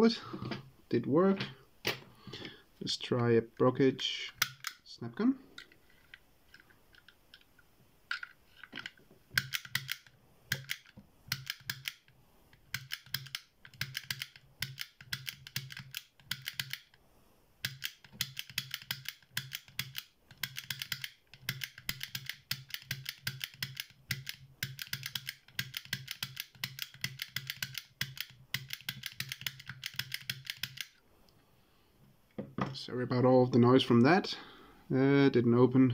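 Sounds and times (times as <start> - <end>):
snap gun rapid clicking: 17.6 - 31.0.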